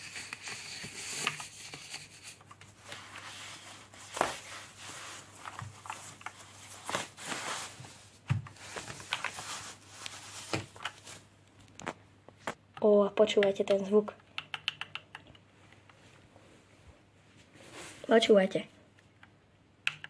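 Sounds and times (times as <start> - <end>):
packaging and plastic wrap rustling: 0.0 - 12.6.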